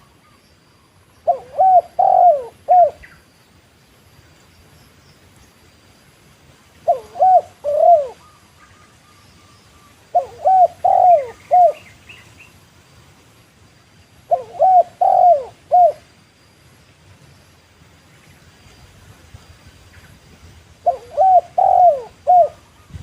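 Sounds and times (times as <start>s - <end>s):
dove cooing: 1.2s - 3.1s, 6.8s - 8.8s, 10.1s - 11.9s, 14.3s - 16.1s, 20.8s - 23.0s.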